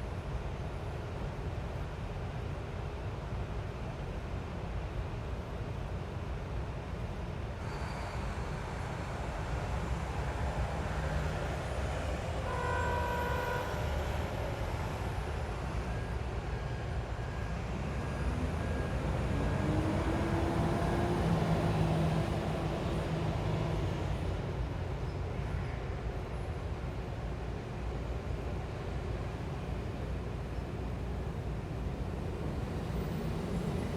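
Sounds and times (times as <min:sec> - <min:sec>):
vehicle horn: 0:12.4 - 0:14.2
heavy engine pulling away: 0:17.7 - 0:24.3.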